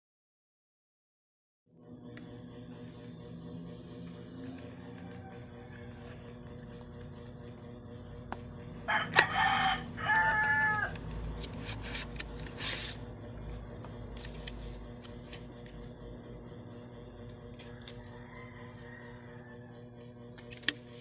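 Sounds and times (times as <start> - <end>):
steady low hum: 1.7 - 21.0.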